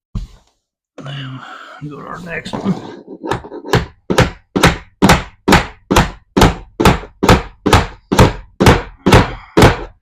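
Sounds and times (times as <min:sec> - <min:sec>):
hammer striking nail into wood: 0:03.7 - 0:10.0.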